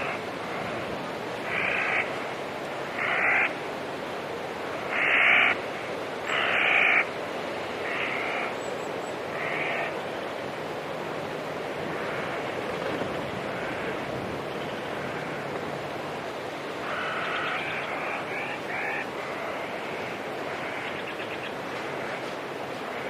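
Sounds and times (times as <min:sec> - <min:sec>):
rushing background noise: 0:00.0 - 0:23.0
animal calling: 0:16.8 - 0:21.4.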